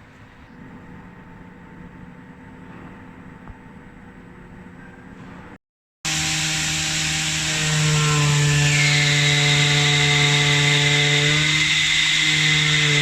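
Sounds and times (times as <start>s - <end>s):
high whine: 8.4s - 13.0s
oscillating knife cutting foam: 8.8s - 13.0s.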